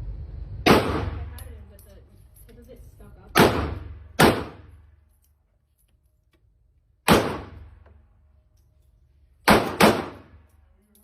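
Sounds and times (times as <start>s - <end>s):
echoing gunshots: 0.6s - 1.3s, 3.4s - 4.8s, 7.0s - 7.8s, 9.4s - 10.4s.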